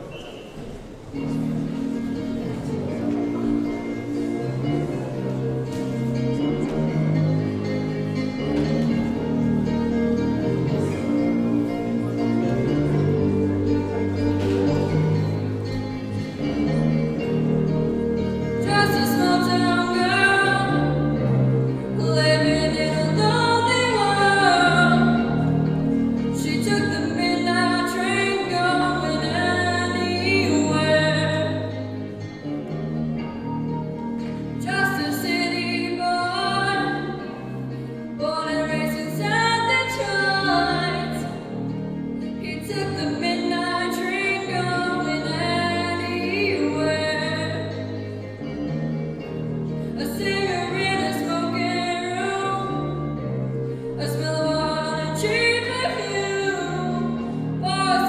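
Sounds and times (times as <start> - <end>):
instrumental accompaniment: 0.6 - 58.0
person singing with vibrato: 1.2 - 32.4, 33.8 - 48.7, 49.7 - 58.0.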